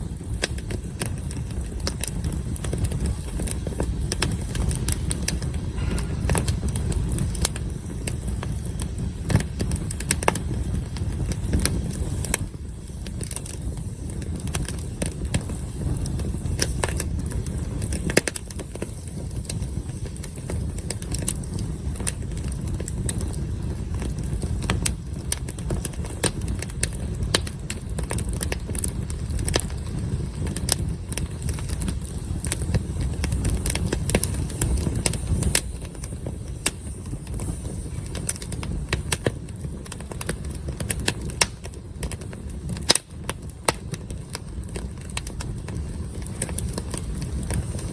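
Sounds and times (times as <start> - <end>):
campfire crackling and popping: 0.0 - 47.9
low rumble: 0.1 - 13.0.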